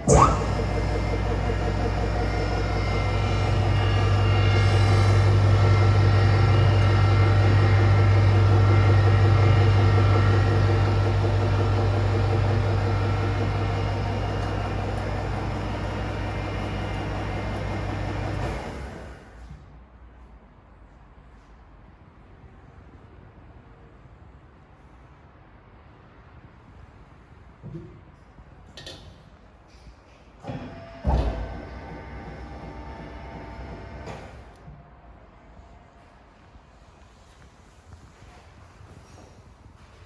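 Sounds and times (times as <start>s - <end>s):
mixing grinder running: 0.0s - 19.2s.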